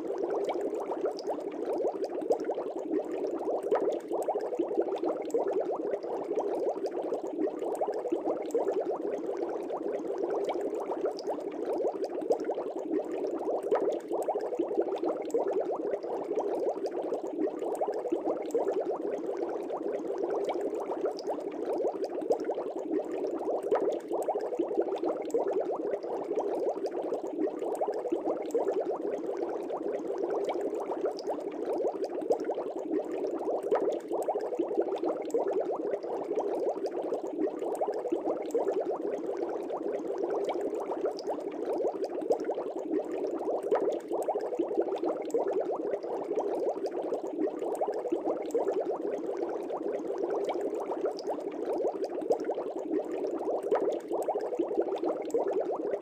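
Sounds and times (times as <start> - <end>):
aquarium air bubbling: 0.0 - 56.0.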